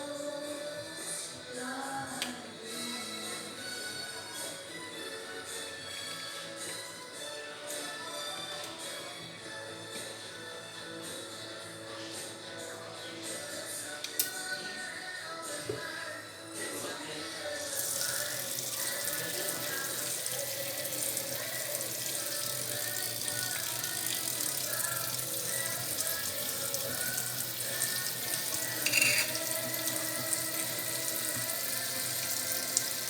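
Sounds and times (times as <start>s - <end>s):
tap water running: 17.8s - 33.0s.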